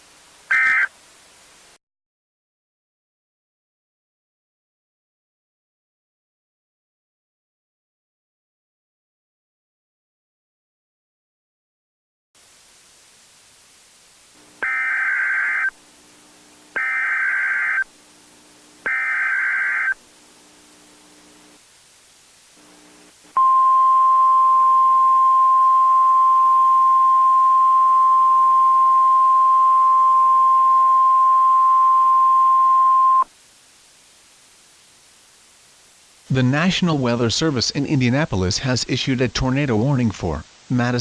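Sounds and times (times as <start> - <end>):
screeching data tones: 0.5 - 0.9, 14.6 - 15.8, 16.8 - 17.9, 18.8 - 20.0
steady high alarm tone: 14.6 - 15.7, 16.8 - 17.8, 18.9 - 20.0.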